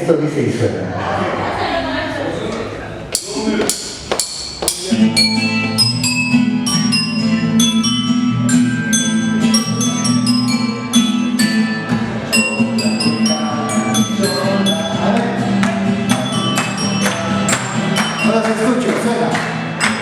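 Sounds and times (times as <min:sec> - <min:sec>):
bell-like struck notes melody: 0:04.2 - 0:20.0.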